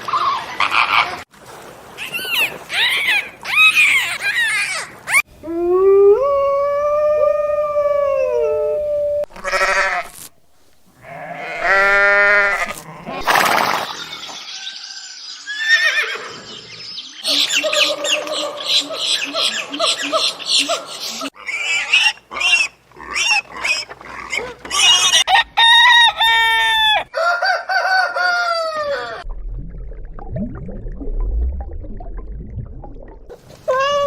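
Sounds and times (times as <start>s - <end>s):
farm animal calls: 11.0s - 13.3s.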